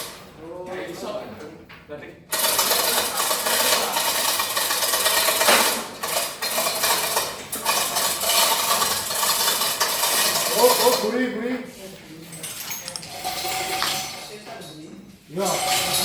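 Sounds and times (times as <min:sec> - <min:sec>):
ice clattering against metal: 0:02.4 - 0:11.1.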